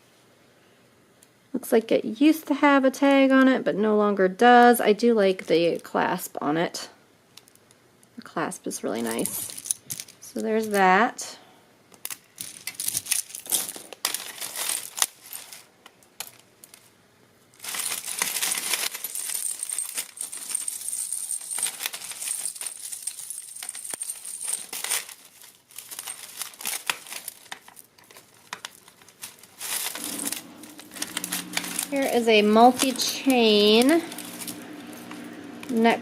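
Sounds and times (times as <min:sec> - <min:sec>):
jewelry clinking and jangling: 0:09.0 - 0:11.0, 0:12.1 - 0:16.9, 0:17.6 - 0:36.0
rustling: 0:12.0 - 0:36.0.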